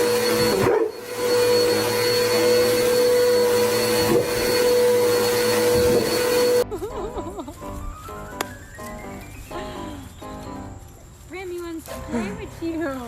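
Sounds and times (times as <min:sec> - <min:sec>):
electric motor whining: 0:00.0 - 0:06.7
rising-and-falling sounds: 0:00.0 - 0:06.8.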